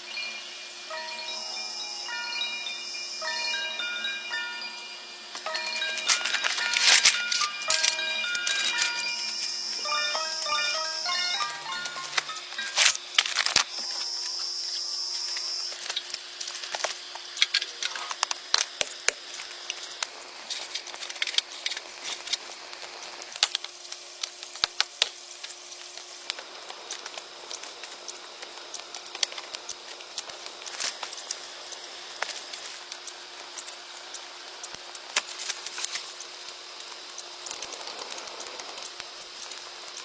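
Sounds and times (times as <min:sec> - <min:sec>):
constant hiss: 0:00.0 - 0:40.0
insect buzz: 0:00.0 - 0:40.0
sharp clicks and ticks: 0:15.2 - 0:40.0.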